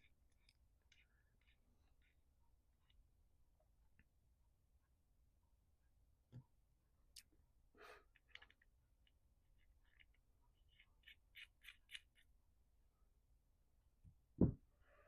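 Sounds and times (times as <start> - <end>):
small metal parts clicking: 9.8 - 12.3.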